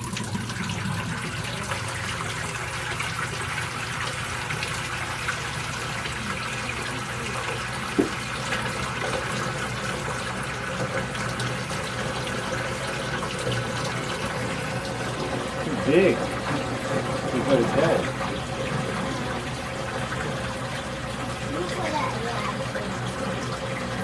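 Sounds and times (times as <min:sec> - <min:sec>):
water rushing into washing machine: 0:00.0 - 0:24.0
short knock: 0:08.0 - 0:08.2.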